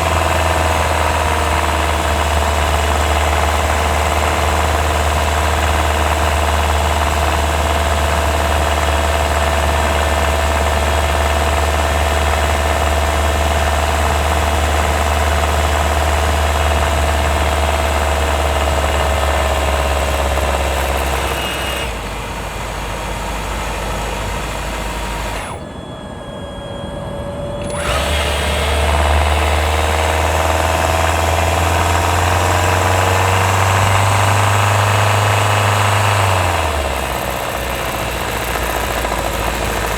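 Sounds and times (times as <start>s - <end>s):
car engine running: 27.8s - 39.9s.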